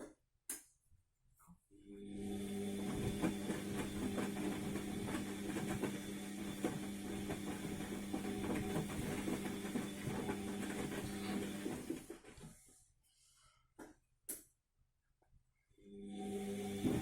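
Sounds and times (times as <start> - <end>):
washing machine motor hum: 1.9 - 12.4, 15.9 - 17.0.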